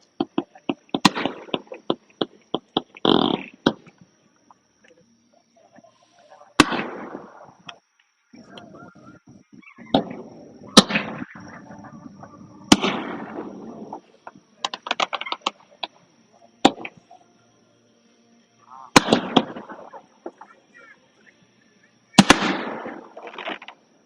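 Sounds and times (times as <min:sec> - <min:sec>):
fireworks crackling pops: 0:00.0 - 0:04.0, 0:06.6 - 0:08.1, 0:09.2 - 0:11.6, 0:12.6 - 0:16.0, 0:16.6 - 0:17.0, 0:18.9 - 0:20.6, 0:22.2 - 0:23.8
fireworks bangs: 0:00.2 - 0:03.9, 0:06.6 - 0:07.8, 0:09.2 - 0:15.5, 0:18.9 - 0:20.6, 0:22.1 - 0:23.8.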